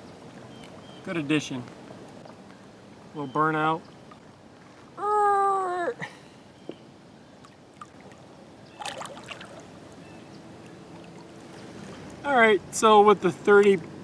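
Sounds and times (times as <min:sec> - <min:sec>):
water rushing around boat: 0:00.0 - 0:14.0.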